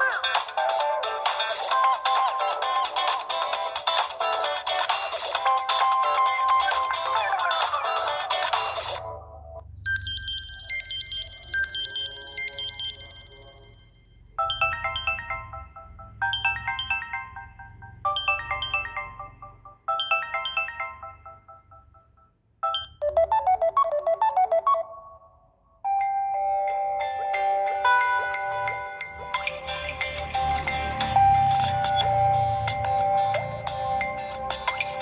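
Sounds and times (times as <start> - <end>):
phone ringtones: 9.8 - 35.0.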